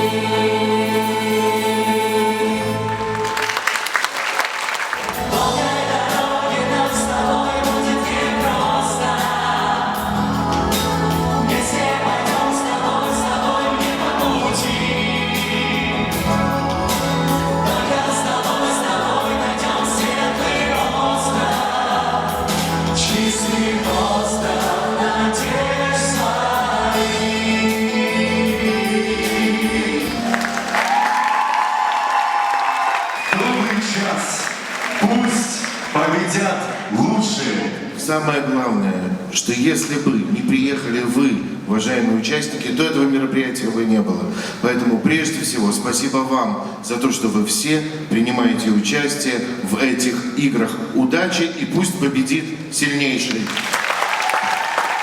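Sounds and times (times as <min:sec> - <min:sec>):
choir singing: 0:00.0 - 0:04.0, 0:04.9 - 0:31.9.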